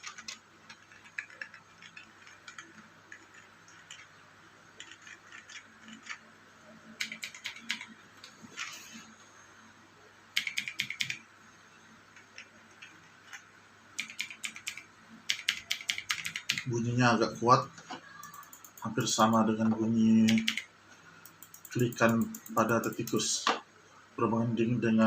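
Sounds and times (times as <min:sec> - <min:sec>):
keyboard typing: 0:00.0 - 0:04.2, 0:04.8 - 0:06.3, 0:06.9 - 0:09.0, 0:10.4 - 0:11.2, 0:12.1 - 0:13.4, 0:14.0 - 0:16.7, 0:18.1 - 0:19.5, 0:20.2 - 0:23.3.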